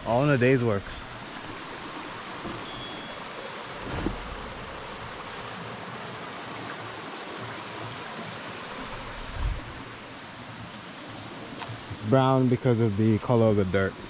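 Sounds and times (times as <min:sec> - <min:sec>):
low thumps: 0:00.0 - 0:05.4
water rushing: 0:00.0 - 0:14.0.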